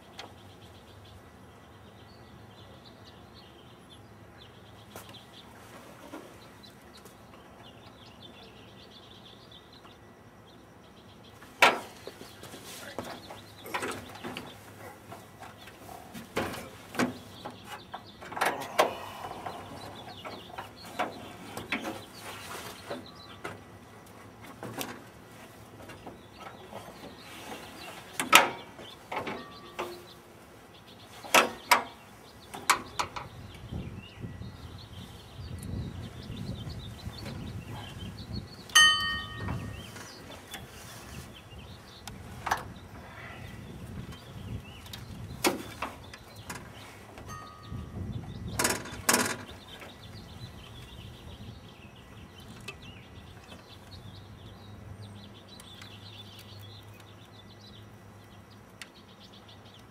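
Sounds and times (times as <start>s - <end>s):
ringing metallic strike: 38.8s - 39.8s.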